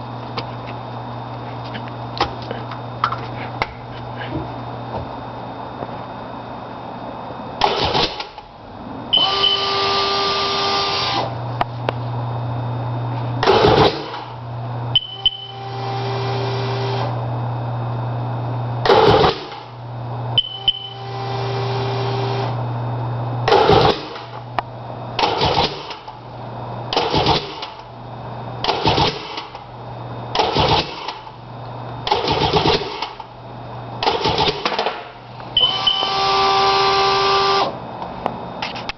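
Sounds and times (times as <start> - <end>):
steady hum: 0.0 - 38.9
held tones: 20.4 - 21.2, 35.6 - 36.3
starter motor cranking: 30.3 - 31.2, 32.0 - 33.2, 34.0 - 34.7.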